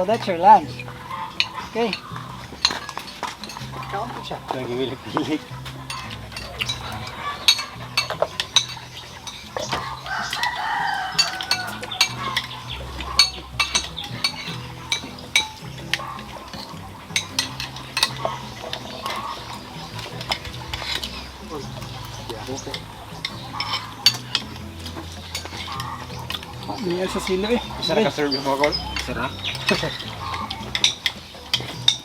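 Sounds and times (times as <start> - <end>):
cutlery clinking on plates: 1.1 - 32.0
rooster crowing: 5.5 - 8.7, 9.6 - 27.9, 28.5 - 31.0.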